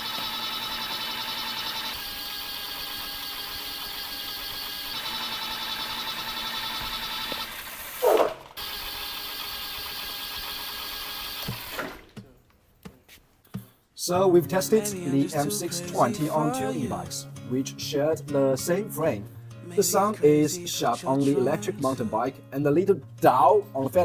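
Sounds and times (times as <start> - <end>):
electric bike motor whining: 0.0 - 12.2
brief loud burst: 8.0 - 8.6.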